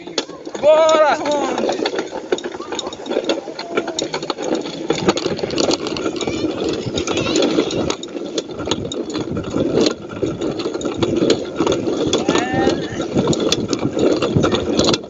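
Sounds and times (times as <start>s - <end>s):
bike rattling over dirt trail: 0.0s - 15.0s
sharp clicks and knocks: 0.0s - 15.0s
wind on microphone: 4.9s - 15.0s.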